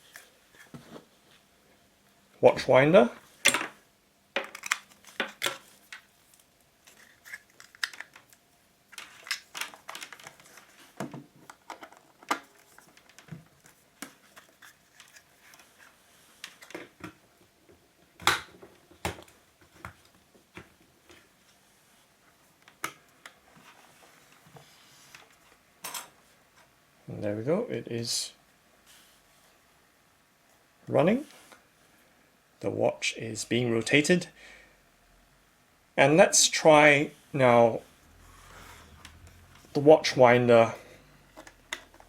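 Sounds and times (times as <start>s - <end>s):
power adapter cable handled: 6.8s - 10.7s.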